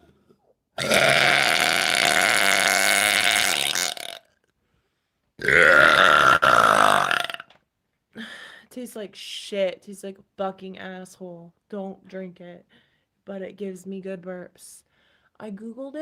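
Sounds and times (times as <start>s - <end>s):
woman burping loudly: 0.8s - 4.3s, 5.4s - 7.5s.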